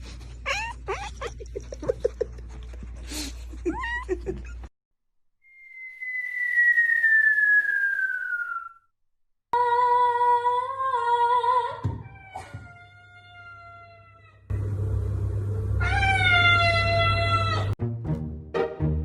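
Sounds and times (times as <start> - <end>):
cat chirping: 0.4 - 1.5
descending whistle sound effect: 5.4 - 8.9.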